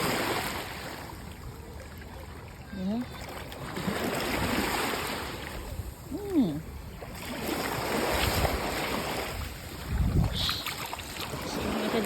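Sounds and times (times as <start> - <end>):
small waves washing on beach: 0.0 - 12.0
wind buffeting microphone: 5.6 - 12.0.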